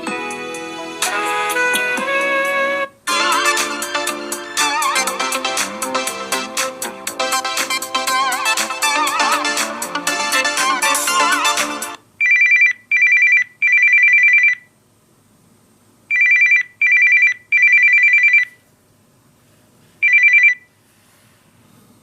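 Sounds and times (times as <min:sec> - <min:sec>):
musical ringtone: 0:00.0 - 0:12.0.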